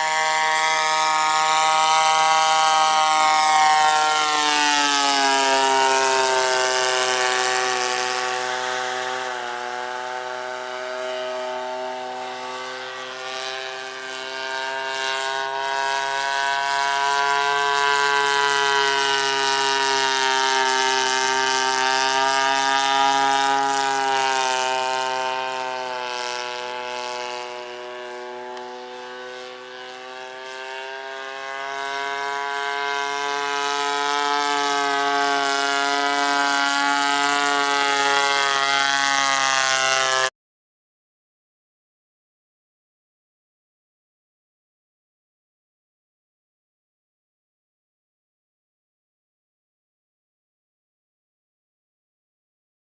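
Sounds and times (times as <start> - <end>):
model airplane engine droning: 0.0 - 40.3.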